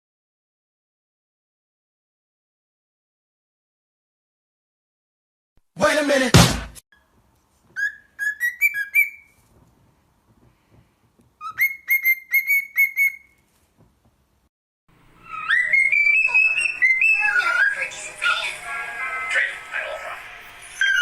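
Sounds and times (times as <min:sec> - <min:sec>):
cockatiel whistling: 0:07.8 - 0:09.4, 0:11.4 - 0:13.4, 0:15.1 - 0:21.0.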